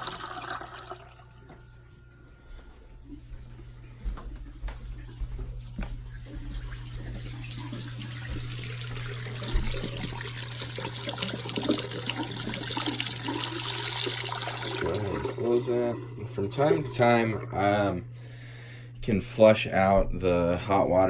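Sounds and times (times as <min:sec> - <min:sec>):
water running from faucet: 0:00.0 - 0:01.3, 0:04.9 - 0:18.0.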